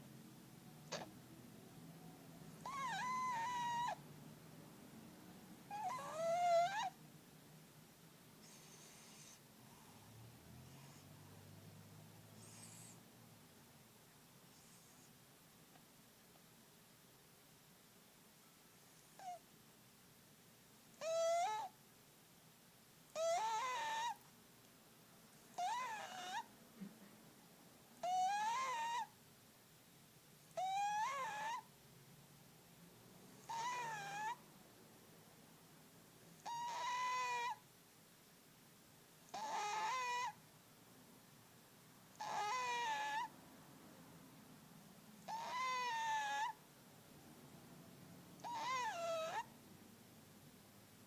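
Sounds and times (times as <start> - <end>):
cat snoring: 0.9 - 1.1, 2.6 - 4.0, 5.7 - 7.0, 8.4 - 11.2, 12.3 - 13.0, 18.8 - 19.4, 21.0 - 21.7, 23.2 - 24.2, 25.5 - 26.5, 28.0 - 29.1, 30.6 - 31.6, 33.4 - 34.4, 36.4 - 37.6, 39.3 - 40.4, 42.2 - 43.3, 45.2 - 46.6, 48.4 - 49.5.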